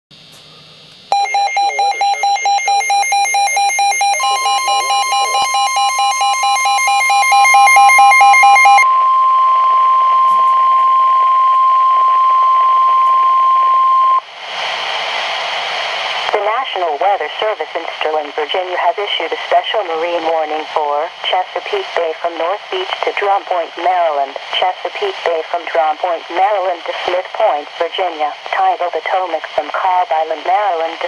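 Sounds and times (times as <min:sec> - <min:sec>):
radio static hiss: 0:00.4 - 0:06.6, 0:14.2 - 0:31.0.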